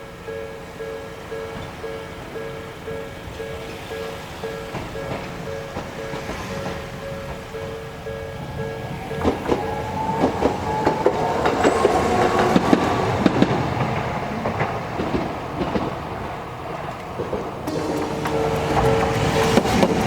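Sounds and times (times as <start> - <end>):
crossing alarm tone: 0.0 - 13.6, 17.7 - 20.0
tram wheels clicking over rail joints: 0.1 - 20.0.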